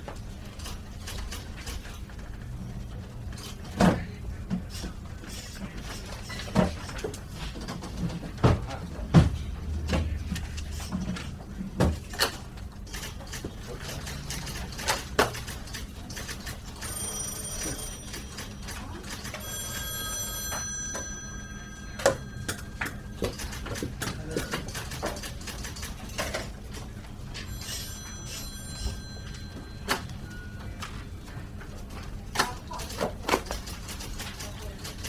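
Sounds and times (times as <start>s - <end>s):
bell-like ringing: 16.7s - 24.2s, 27.4s - 31.0s.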